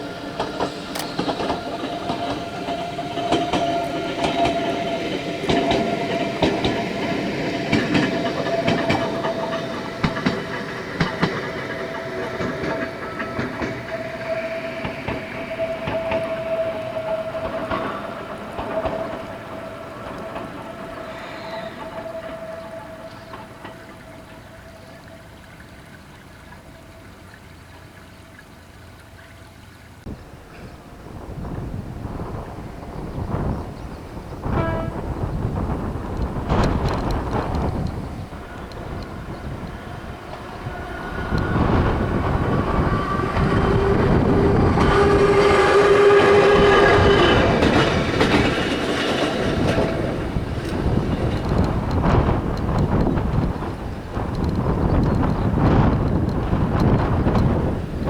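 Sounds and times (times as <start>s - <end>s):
electric train motor whine: 0.0s - 25.5s, 30.1s - 58.0s
train low rumble: 0.0s - 58.0s
wheel clicks over rail joints: 0.3s - 25.0s, 46.7s - 58.0s.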